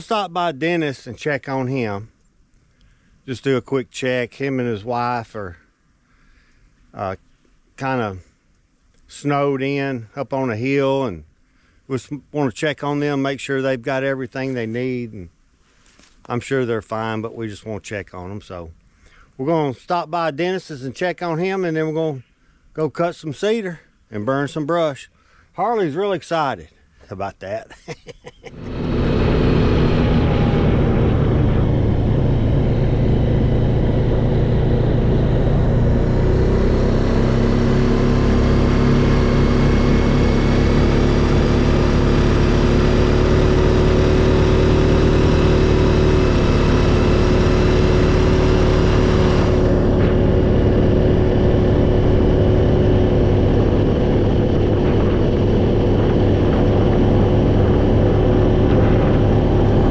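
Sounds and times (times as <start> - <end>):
vehicle engine and road noise: 28.5 - 59.9.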